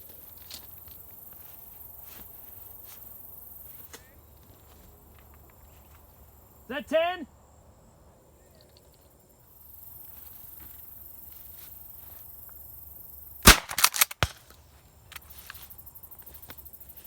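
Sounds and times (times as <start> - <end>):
loud shotgun blast: 13.4 - 14.4.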